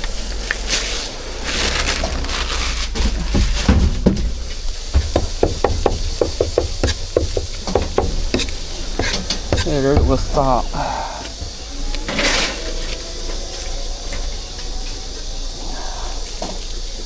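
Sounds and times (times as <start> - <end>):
steady low hum: 0.0 - 17.0
cleaver chopping meat on wood: 3.0 - 10.6.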